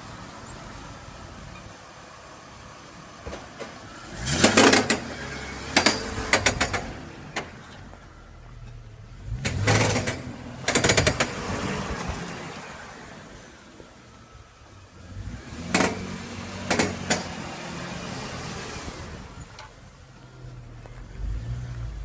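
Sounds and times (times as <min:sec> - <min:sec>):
low engine hum: 0:00.0 - 0:22.0.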